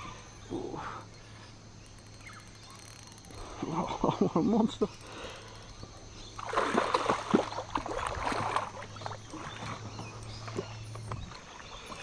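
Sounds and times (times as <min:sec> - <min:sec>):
water splashing: 0:06.2 - 0:12.0.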